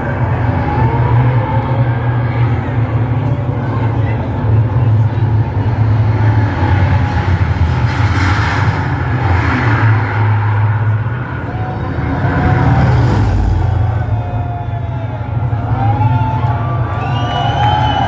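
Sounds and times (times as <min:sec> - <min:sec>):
low rumble: 0:00.0 - 0:18.0.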